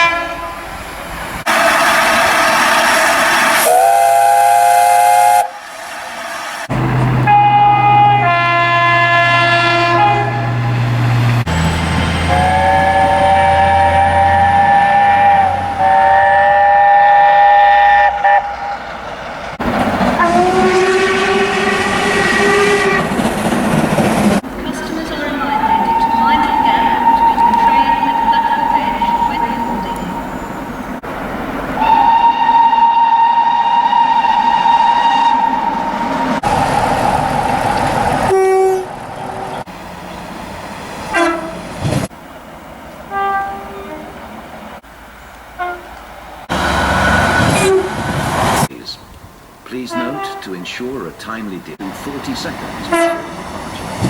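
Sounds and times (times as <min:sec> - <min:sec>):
train horn chord: 0:00.0 - 0:00.8, 0:02.8 - 0:11.4, 0:12.2 - 0:18.9, 0:20.2 - 0:23.1, 0:31.8 - 0:35.7, 0:38.3 - 0:39.0, 0:41.1 - 0:41.6, 0:43.1 - 0:44.2, 0:45.6 - 0:46.0, 0:47.1 - 0:48.0, 0:49.8 - 0:50.7, 0:52.9 - 0:53.3
low steady train horn: 0:00.0 - 0:11.5, 0:12.2 - 0:19.0, 0:20.1 - 0:23.2, 0:24.6 - 0:30.6, 0:31.8 - 0:36.5, 0:38.2 - 0:39.7, 0:41.1 - 0:41.7, 0:43.0 - 0:44.4, 0:45.6 - 0:48.1, 0:49.7 - 0:50.7, 0:52.8 - 0:53.4
loud noise: 0:01.5 - 0:08.6.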